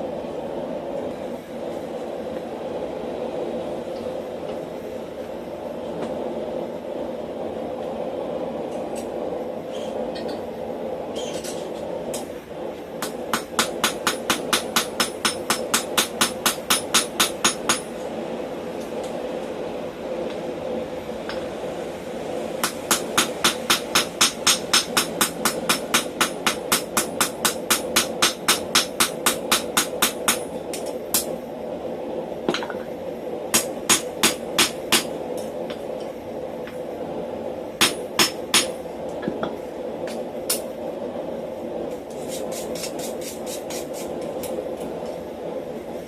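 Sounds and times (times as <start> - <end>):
steady rumbling hum: 0.0 - 46.0
hammer striking steel on anvil: 13.0 - 17.9, 22.6 - 30.4, 37.8 - 38.8.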